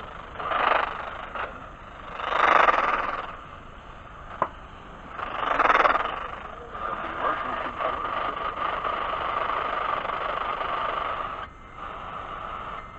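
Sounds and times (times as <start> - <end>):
buzzing digital screeches: 5.1 - 12.9.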